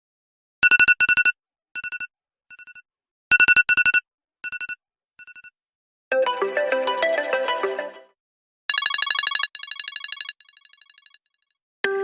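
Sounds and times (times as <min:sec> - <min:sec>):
rapid electronic alarm beeps: 0:00.6 - 0:05.5.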